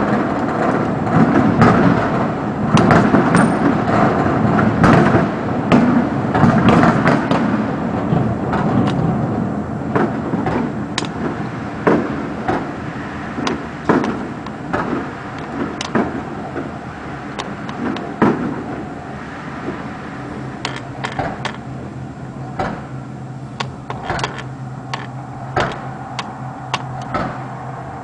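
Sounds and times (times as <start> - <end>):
fireworks sharp cracks: 0.0 - 9.1, 9.9 - 18.8
fireworks booms and bangs: 0.0 - 19.9
rumbling background: 0.0 - 28.0.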